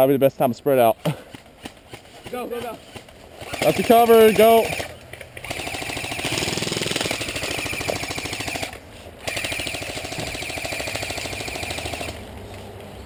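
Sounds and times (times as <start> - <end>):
airsoft gun automatic fire: 3.4 - 12.2.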